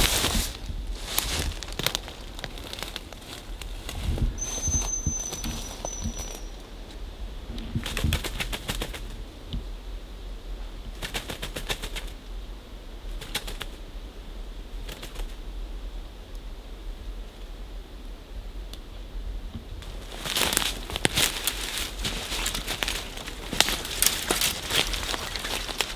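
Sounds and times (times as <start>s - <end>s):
rapid bird wing beats: 0.0s - 6.6s, 7.4s - 9.6s, 10.9s - 12.3s, 13.0s - 13.9s, 14.7s - 15.5s, 19.8s - 25.9s
thin high bird whistle: 4.4s - 6.8s.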